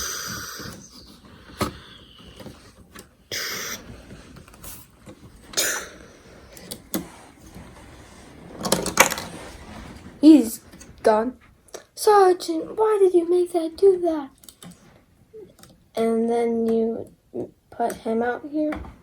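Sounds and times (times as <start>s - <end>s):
short breathy hisses: 0.0s - 2.6s, 3.3s - 4.2s, 5.6s - 6.6s.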